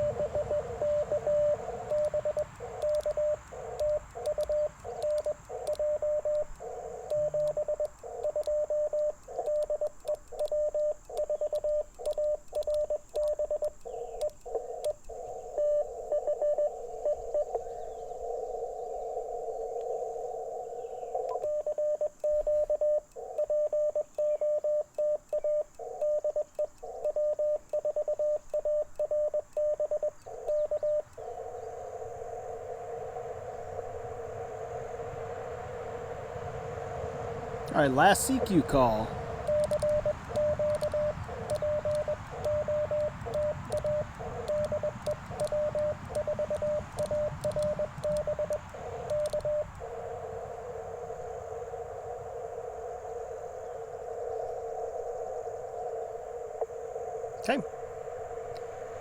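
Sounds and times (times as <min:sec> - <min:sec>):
morse code beeps: 0:00.0 - 0:14.9, 0:15.5 - 0:17.5, 0:21.3 - 0:31.1, 0:37.7 - 0:49.7
receiver hiss: 0:00.0 - 0:59.0.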